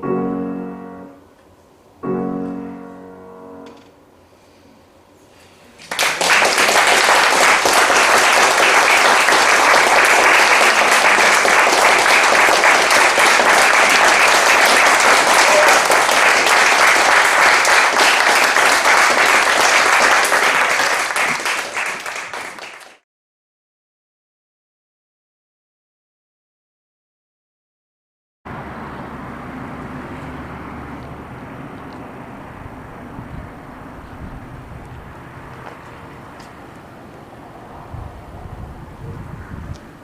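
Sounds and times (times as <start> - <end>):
audience applauding: 5.8 - 23.0.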